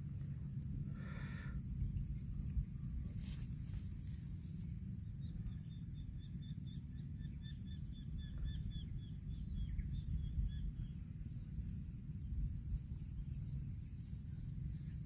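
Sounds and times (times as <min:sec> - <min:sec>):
insects buzzing: 0:00.0 - 0:15.0
low rumbling noise: 0:08.0 - 0:15.0.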